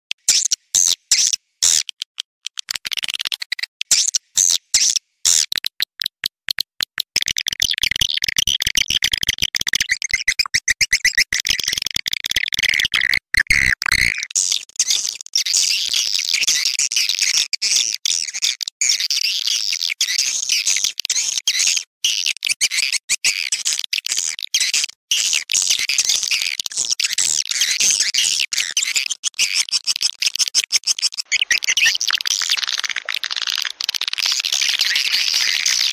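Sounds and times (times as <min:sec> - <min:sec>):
swiftlets twittering and chirping: 0:12.7 - 0:14.3, 0:31.1 - 0:35.9.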